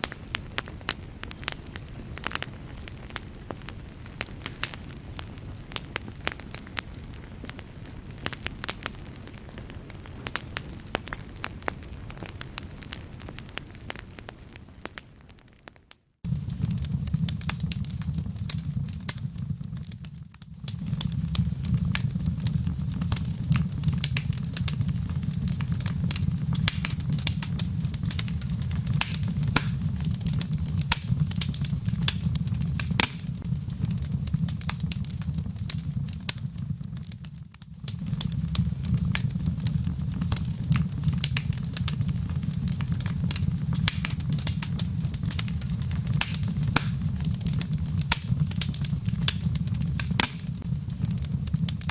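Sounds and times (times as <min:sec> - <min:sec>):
fireplace fire crackling: 0:00.0 - 0:51.9
low rumble: 0:16.3 - 0:37.0.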